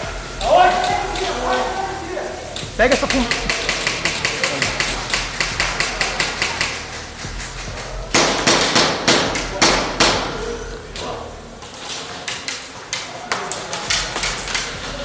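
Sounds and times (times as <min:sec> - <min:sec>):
airsoft guns firing: 0:03.0 - 0:15.0.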